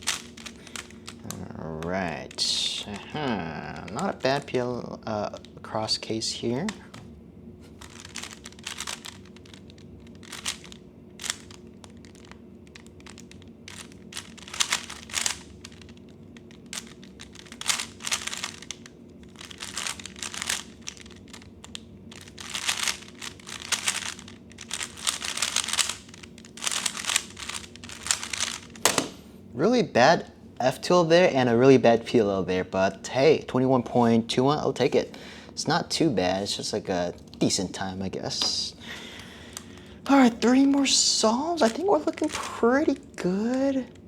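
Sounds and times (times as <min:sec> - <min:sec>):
puzzle cube plastic clicks: 0:00.0 - 0:05.5, 0:07.8 - 0:29.2, 0:39.2 - 0:44.0
faint steady hum: 0:00.0 - 0:44.0.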